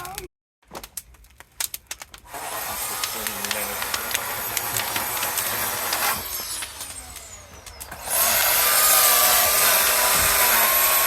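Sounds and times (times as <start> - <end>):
electric air blower whine: 2.3 - 11.0.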